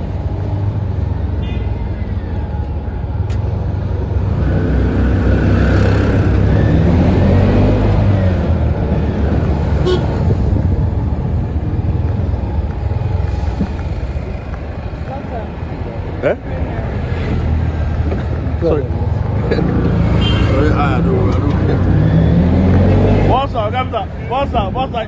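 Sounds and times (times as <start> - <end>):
road traffic rumble: 0.0 - 25.0
vehicle passing: 16.8 - 23.6.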